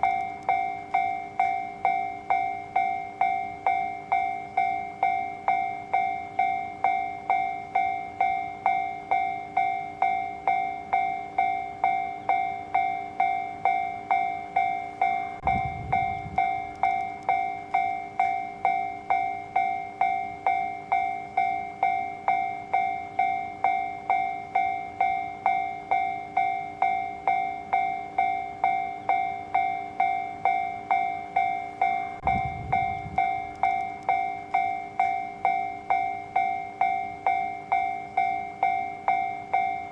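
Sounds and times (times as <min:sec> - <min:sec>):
level crossing bell ringing: 0:00.0 - 0:39.9
low rumble: 0:15.4 - 0:16.8, 0:32.2 - 0:33.8.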